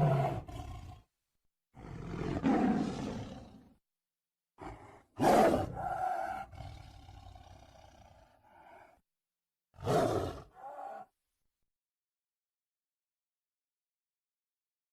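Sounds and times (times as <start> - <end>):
tiger roaring: 0.0 - 1.0, 1.8 - 3.7, 4.6 - 9.0, 9.8 - 11.1.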